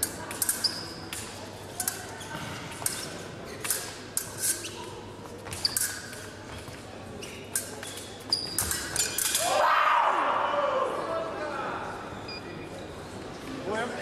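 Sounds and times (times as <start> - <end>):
fencing blades clinking: 0.0 - 6.7, 7.4 - 9.6.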